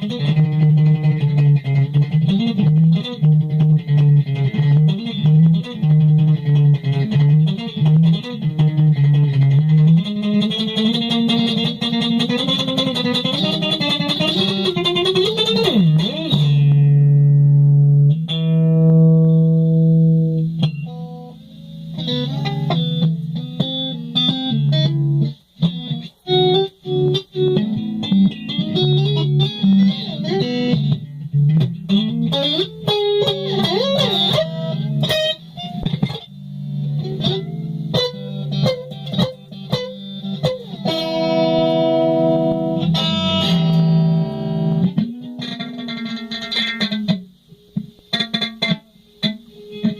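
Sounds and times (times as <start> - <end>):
solo guitar improvisation: 0.0 - 49.9.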